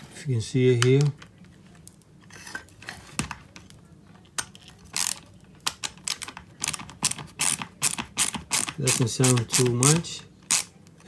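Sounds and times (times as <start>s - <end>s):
ratchet screwdriver clicking: 5.0s - 5.2s, 6.0s - 10.7s.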